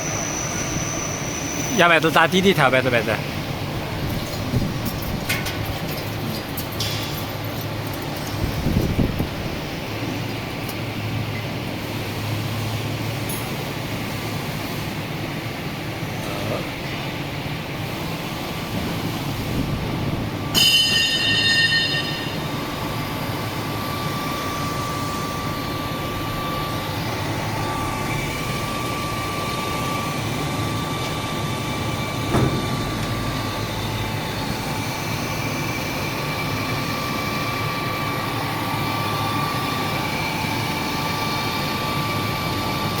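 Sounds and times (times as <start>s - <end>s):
drilling machine running: 22.3s - 43.0s
sharp knock: 32.2s - 33.1s.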